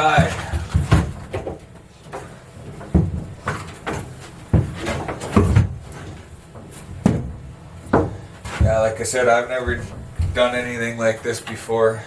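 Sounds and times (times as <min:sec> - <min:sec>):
knocks and thumps on wooden panel: 0:00.0 - 0:06.2, 0:07.0 - 0:08.9.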